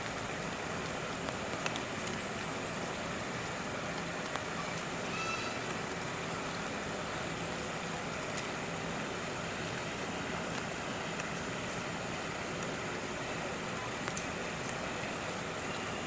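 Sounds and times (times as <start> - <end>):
faint ticks: 14.0 - 14.3.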